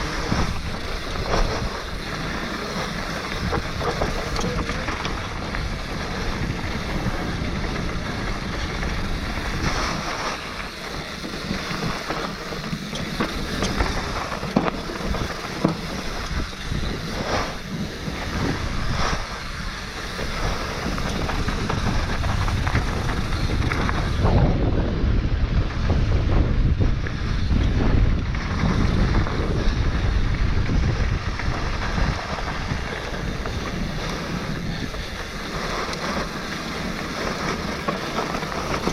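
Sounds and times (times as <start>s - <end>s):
tyres on dirt: 0.0s - 38.9s
wind noise on microphone: 0.0s - 38.9s
bike clattering knocks: 11.1s - 16.4s.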